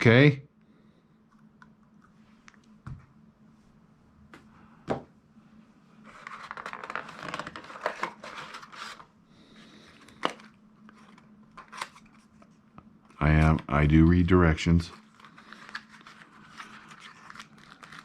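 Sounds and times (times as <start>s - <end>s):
paper rustling and crinkling: 6.0s - 9.1s, 14.8s - 18.0s.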